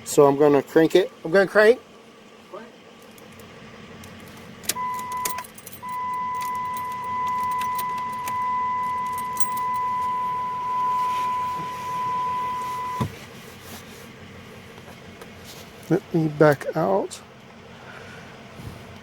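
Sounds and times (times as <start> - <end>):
keys jingling and clicking: 4.2 - 10.8
high-pitched electronic beep: 4.8 - 13.1.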